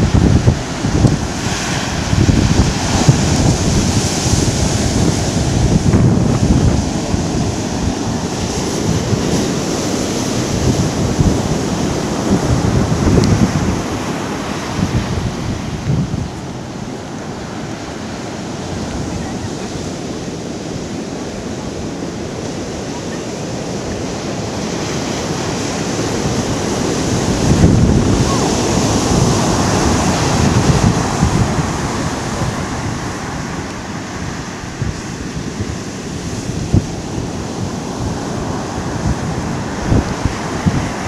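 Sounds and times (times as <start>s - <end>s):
heavy surf breaking on beach: 0.0s - 41.0s
wind buffeting microphone: 0.0s - 41.0s.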